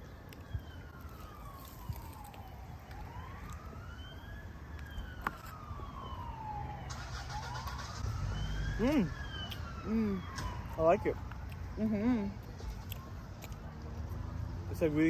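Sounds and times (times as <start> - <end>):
emergency siren wailing: 0.0 - 12.4.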